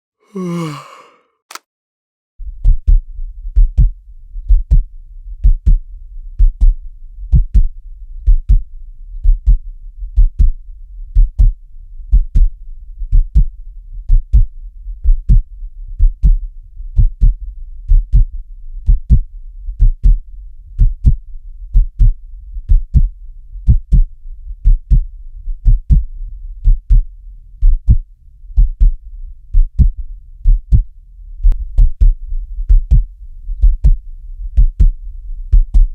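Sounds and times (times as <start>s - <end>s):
heart beating: 6.4s - 8.6s, 31.8s - 35.9s.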